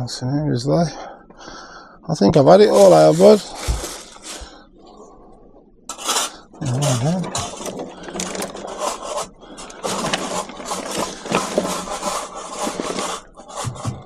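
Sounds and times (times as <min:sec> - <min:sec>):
scrap metal scraping and clattering: 0:02.6 - 0:04.5, 0:05.9 - 0:14.0.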